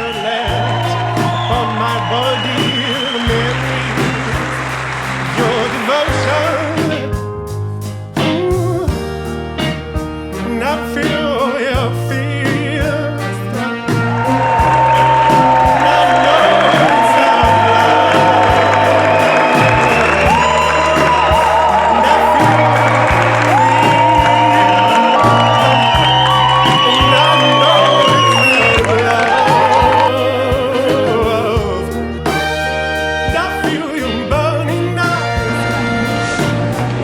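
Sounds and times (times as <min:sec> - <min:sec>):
person singing with vibrato: 0:00.0 - 0:07.2, 0:08.2 - 0:36.8
bass line: 0:00.0 - 0:37.0
light beat: 0:14.0 - 0:32.7.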